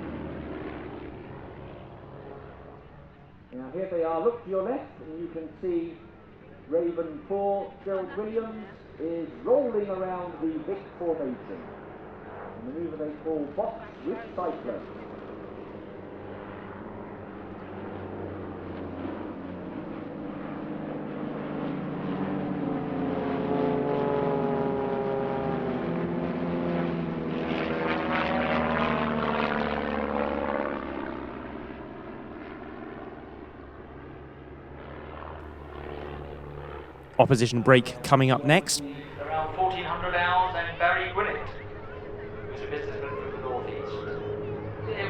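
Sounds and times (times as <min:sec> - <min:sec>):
propeller aircraft engine drone: 0:00.0 - 0:03.5.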